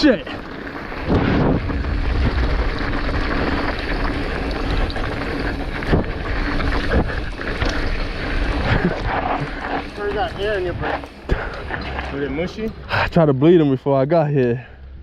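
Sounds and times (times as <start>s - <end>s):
tyres rumbling on dirt trail: 0.0s - 14.8s
wind buffeting microphone: 0.8s - 12.8s.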